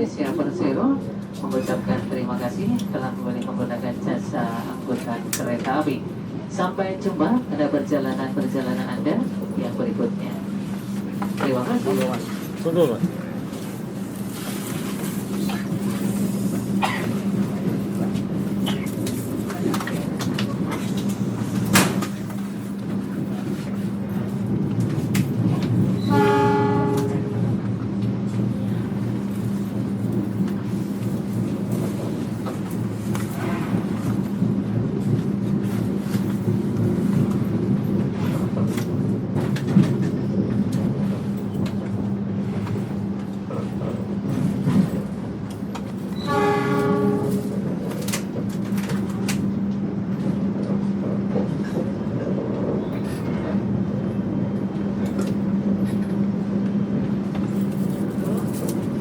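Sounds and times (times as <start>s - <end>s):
train rumble: 0.0s - 59.0s
train horn from inside: 26.0s - 27.6s, 33.4s - 34.0s, 46.1s - 47.6s.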